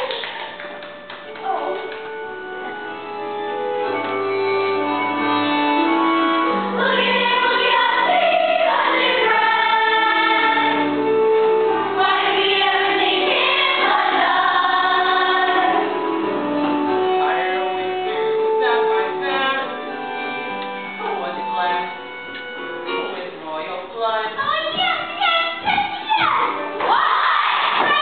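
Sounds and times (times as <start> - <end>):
instrumental accompaniment: 0.0 - 28.0
ensemble singing together: 3.0 - 20.3.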